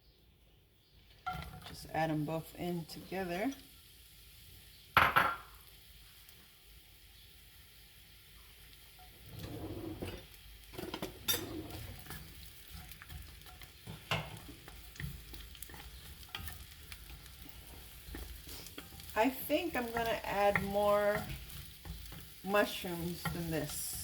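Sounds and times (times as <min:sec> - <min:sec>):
vegetables sizzling in a frying pan: 0:00.7 - 0:24.0
utensil clicking against pan: 0:10.8 - 0:24.0.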